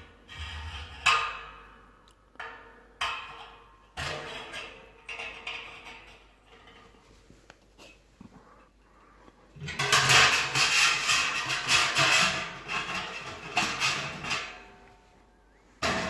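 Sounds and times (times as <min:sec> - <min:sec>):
scraping and rustling of parts: 0:04.0 - 0:15.1.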